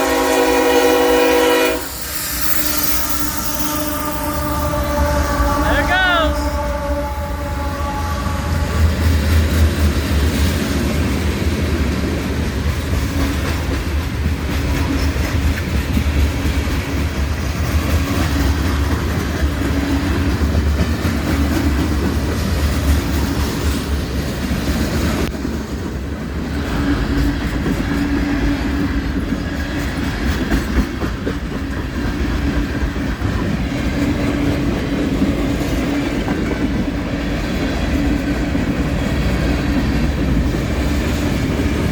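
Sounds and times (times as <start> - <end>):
train wheels clattering on rails: 8.6 - 41.9.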